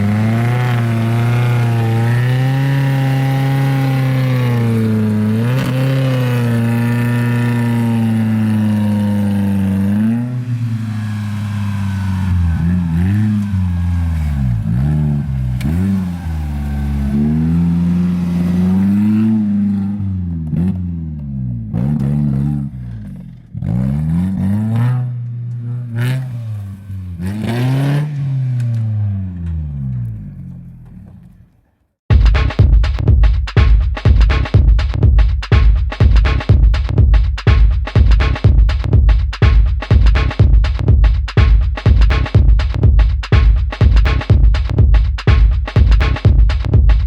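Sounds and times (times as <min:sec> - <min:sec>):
off-road engine revving: 0:00.0 - 0:31.4.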